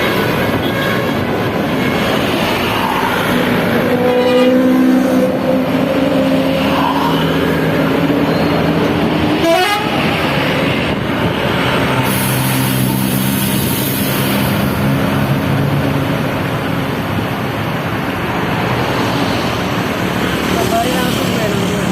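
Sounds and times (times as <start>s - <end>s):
bus musical horns: 0.0s - 1.3s, 3.8s - 6.1s, 9.4s - 10.1s
bus engine and road noise: 0.0s - 21.9s.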